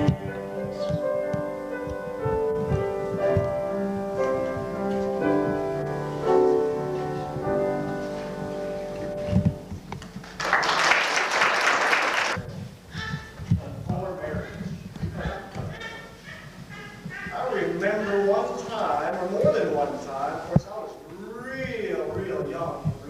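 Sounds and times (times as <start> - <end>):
piano music: 0.0 - 10.4, 15.7 - 20.5
audience clapping: 10.0 - 12.4.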